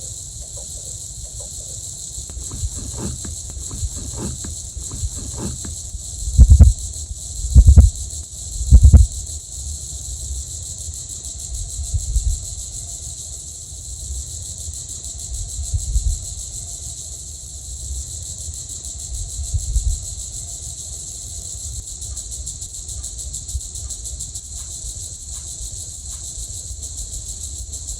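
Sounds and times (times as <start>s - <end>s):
high-pitched insect chorus: 0.0s - 27.9s
dull low thump: 2.3s - 5.8s, 6.4s - 6.8s, 7.5s - 8.0s, 8.7s - 9.1s.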